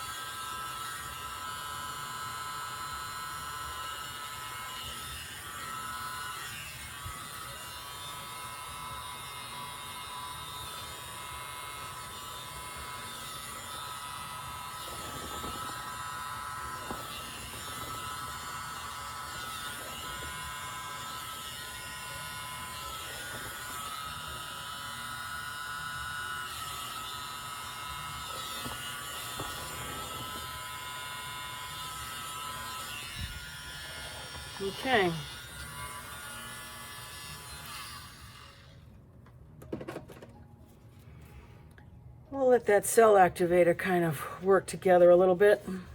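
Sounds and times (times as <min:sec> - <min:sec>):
small leaf blower whirring: 0:00.0 - 0:38.9.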